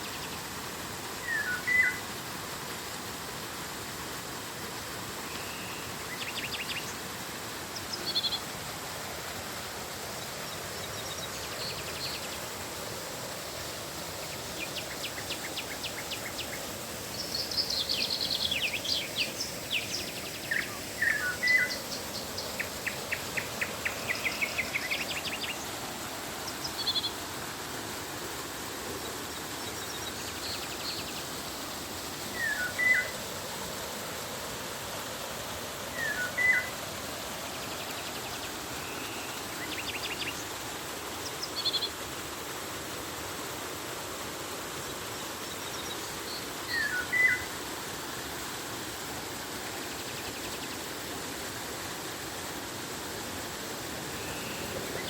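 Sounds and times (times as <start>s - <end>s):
river water flowing: 0.0s - 55.0s
birds whistling and trilling: 1.2s - 2.0s, 17.2s - 25.6s, 32.3s - 33.1s, 36.0s - 36.7s, 46.7s - 47.5s.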